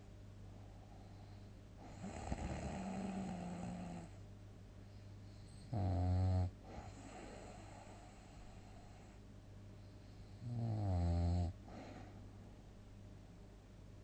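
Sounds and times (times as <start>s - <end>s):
low steady hum: 0.0s - 14.0s
person snoring: 1.9s - 4.1s.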